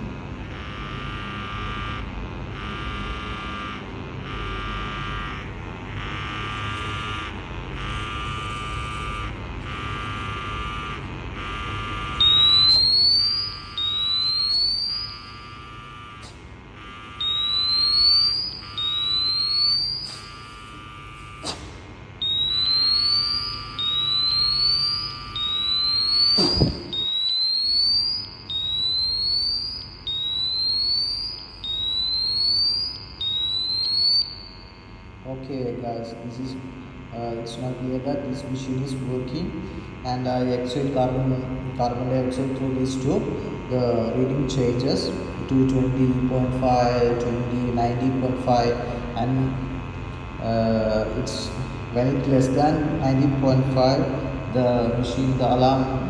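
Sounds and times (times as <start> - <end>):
rising electronic alarm chirps: 0.0 - 36.5
pulsing hum: 0.0 - 56.0
sharp click: 21.4 - 21.7.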